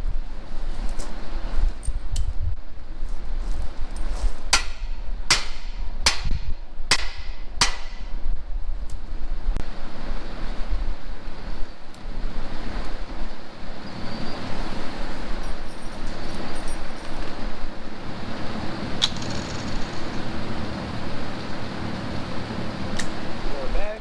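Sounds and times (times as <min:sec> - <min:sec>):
steady low rumble: 0:00.0 - 0:24.0
hammer striking steel: 0:04.5 - 0:08.2.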